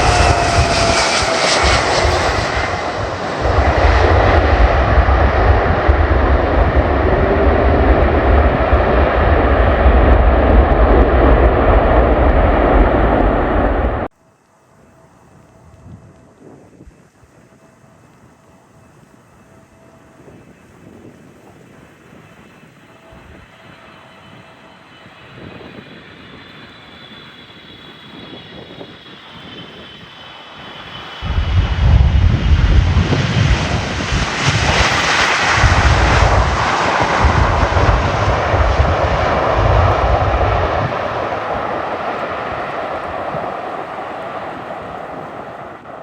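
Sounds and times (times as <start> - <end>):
heavy surging low rumble: 0.0 - 14.1, 29.8 - 46.0
airliner engine whine: 0.0 - 46.0.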